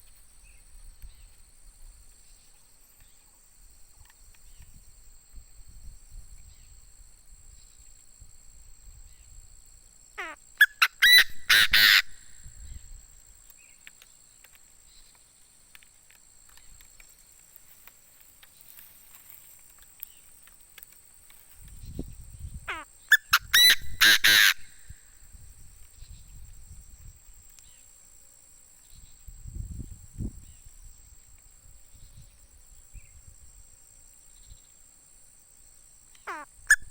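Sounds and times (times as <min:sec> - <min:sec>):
high insect drone: 0:00.0 - 0:36.9
francolin calling harsh notes: 0:10.8 - 0:12.2, 0:22.7 - 0:24.8.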